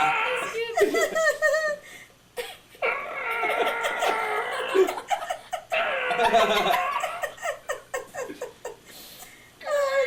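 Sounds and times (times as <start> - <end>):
people laughing and giggling: 0.7 - 1.8, 3.6 - 8.9.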